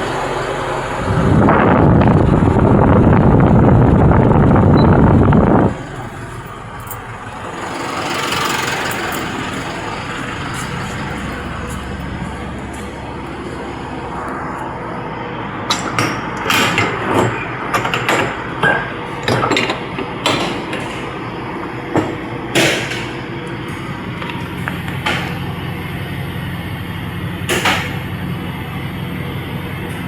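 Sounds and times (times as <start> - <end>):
steady engine-like hum: 0.0 - 30.0
sharp metallic knocks and clacks: 15.7 - 21.2, 21.9 - 23.8.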